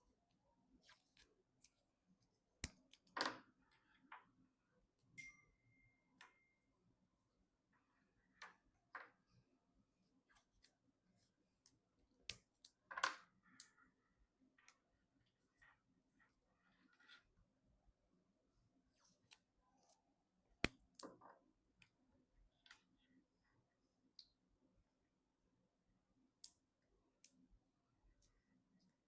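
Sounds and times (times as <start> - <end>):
small clicks and ticks: 26.2 - 29.0.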